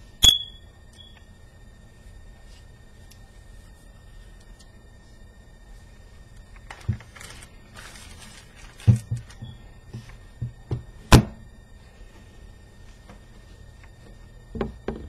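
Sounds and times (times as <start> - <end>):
rustling: 6.2 - 10.4.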